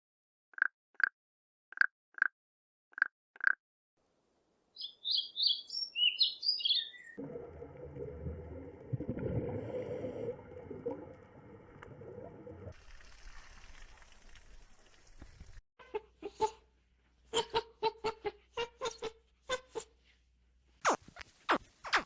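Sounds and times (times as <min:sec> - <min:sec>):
farmyard background noise: 0:04.8 - 0:07.1.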